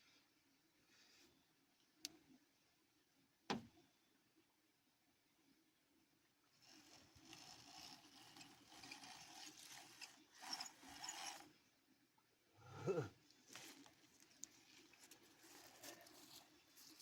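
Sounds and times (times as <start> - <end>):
toy truck motor and gears: 6.6 - 11.7.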